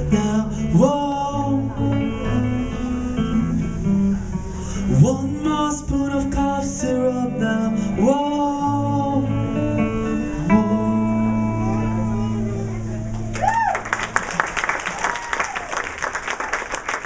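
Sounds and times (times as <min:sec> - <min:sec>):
wordless singing: 0:00.0 - 0:03.6, 0:04.9 - 0:12.9
sliding guitar notes: 0:00.0 - 0:14.4.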